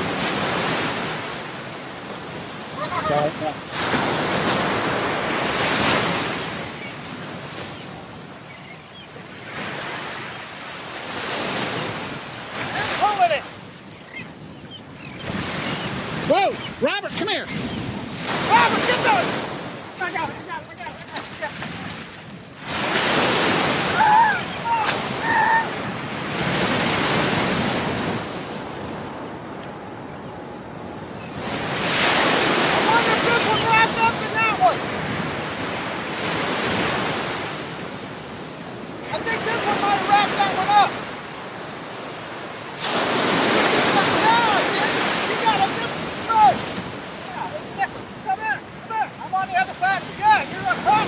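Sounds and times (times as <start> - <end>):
ocean surf breaking: 0.0 - 51.0
wind buffeting microphone: 11.4 - 40.7.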